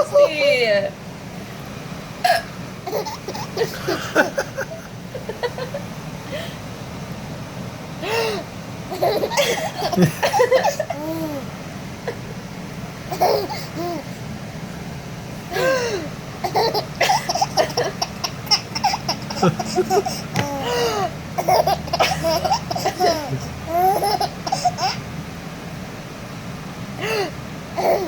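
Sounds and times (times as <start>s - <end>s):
baby laughing: 2.8s - 5.8s, 8.2s - 11.5s, 13.1s - 14.2s, 15.5s - 25.0s, 27.8s - 28.0s
woman hiccupping: 19.3s - 21.1s.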